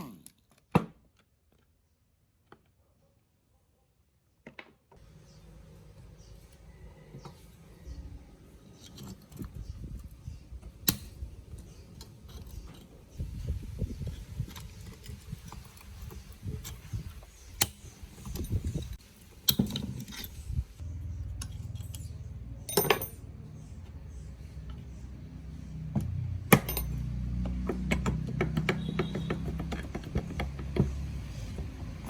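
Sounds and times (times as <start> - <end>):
metal tools clicking and clinking: 14.0 - 20.5, 21.3 - 23.3.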